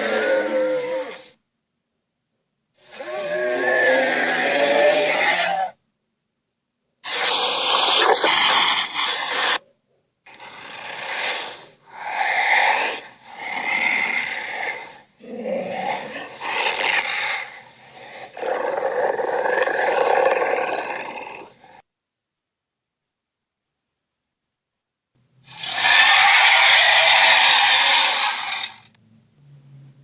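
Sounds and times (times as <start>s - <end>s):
creature rasping growls and roars: 0.0s - 1.4s, 2.8s - 5.8s, 7.0s - 9.6s, 10.3s - 21.8s, 25.5s - 28.9s.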